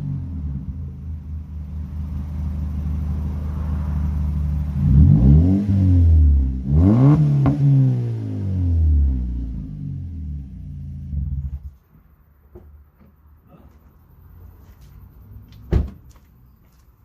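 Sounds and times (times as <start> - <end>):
engine idling and revving: 0.0 - 11.8.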